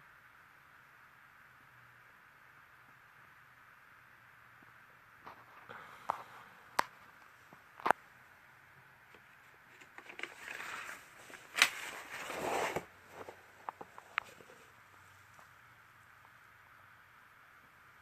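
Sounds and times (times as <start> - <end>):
scraping and rustling: 9.1 - 15.6.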